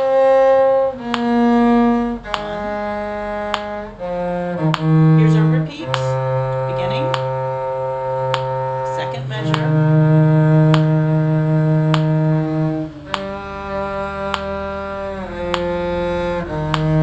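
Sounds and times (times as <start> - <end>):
low bowed string instrument: 0.0 - 17.0.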